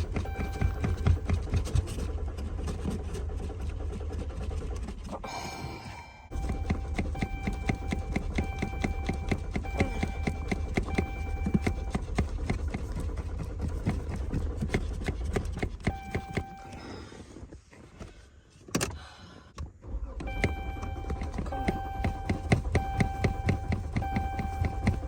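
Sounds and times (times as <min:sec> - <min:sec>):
warning tone: 0:00.0 - 0:02.0, 0:05.2 - 0:13.0, 0:15.8 - 0:17.0, 0:20.2 - 0:25.0
car engine cranking: 0:00.0 - 0:17.8, 0:19.8 - 0:25.0.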